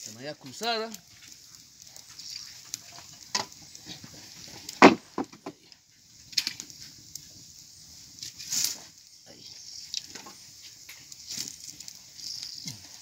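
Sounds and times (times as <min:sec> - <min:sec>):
wet wood crackling and sizzling: 0:00.0 - 0:13.0
firewood knocking together: 0:03.3 - 0:05.7.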